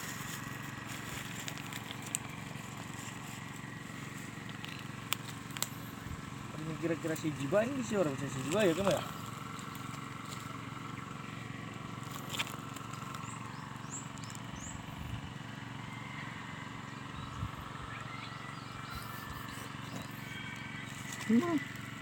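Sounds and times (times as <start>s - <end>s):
steady background hum: 0.0s - 22.0s
faint bird chirps: 15.8s - 21.9s.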